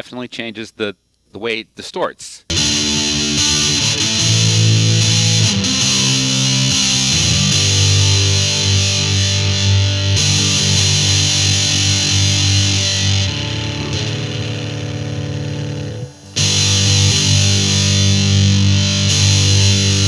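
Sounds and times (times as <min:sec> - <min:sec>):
fuzzy distorted electric guitar chords: 0:02.5 - 0:20.0.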